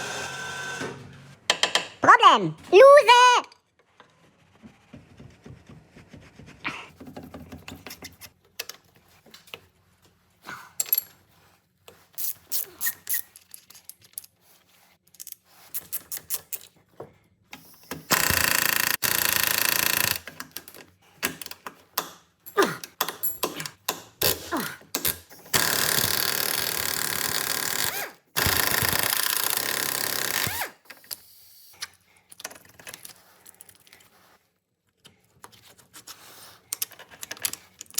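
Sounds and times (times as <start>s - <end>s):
power tool running: 0.0s - 1.1s.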